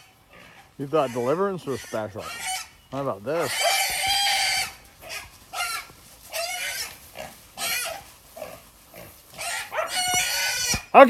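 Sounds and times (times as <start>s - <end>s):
pigs squealing: 0.0s - 11.0s.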